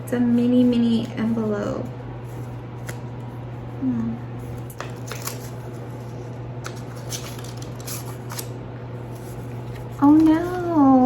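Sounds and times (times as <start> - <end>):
paper envelope rustling: 4.5 - 11.0.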